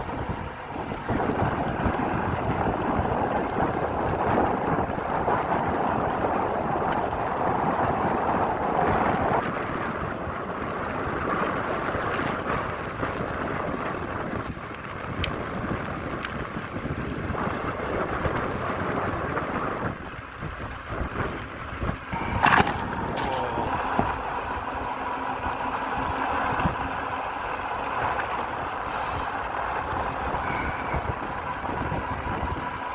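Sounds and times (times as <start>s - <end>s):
wind buffeting microphone: 0.0s - 32.9s
falling rain: 22.2s - 32.9s.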